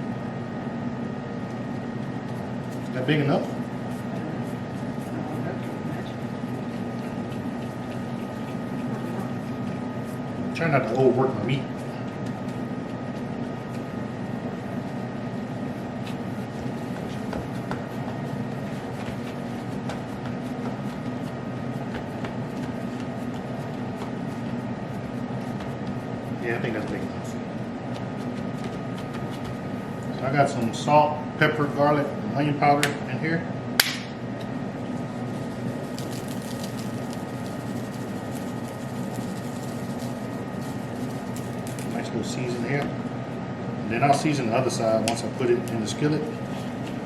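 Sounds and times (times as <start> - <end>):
low mechanical hum: 0.0 - 47.0
seasoning shaker rattling: 35.6 - 42.0.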